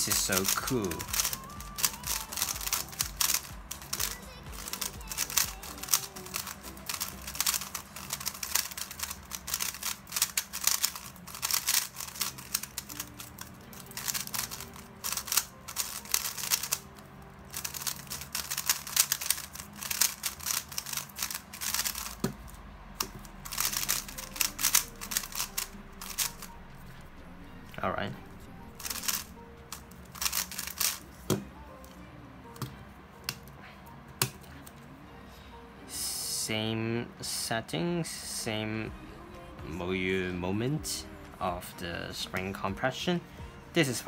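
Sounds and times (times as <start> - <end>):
puzzle cube plastic clacking: 0.0 - 27.0, 28.7 - 31.5, 34.2 - 34.8.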